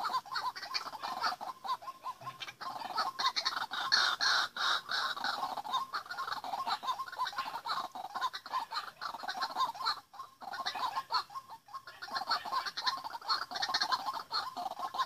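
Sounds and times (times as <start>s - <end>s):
bird croaking calls: 0.0s - 15.0s.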